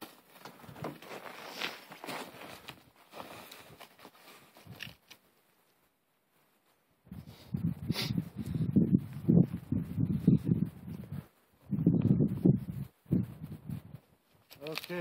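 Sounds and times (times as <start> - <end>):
rustling: 0.0 - 6.9, 12.6 - 15.0.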